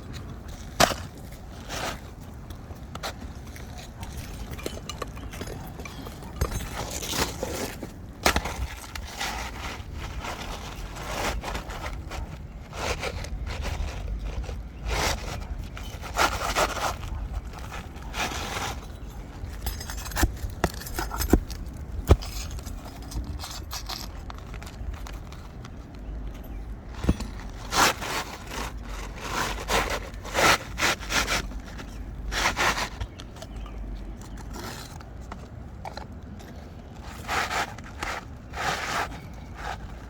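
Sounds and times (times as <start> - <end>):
roof shingles scraping and crackling: 0.4 - 25.8, 26.9 - 33.6.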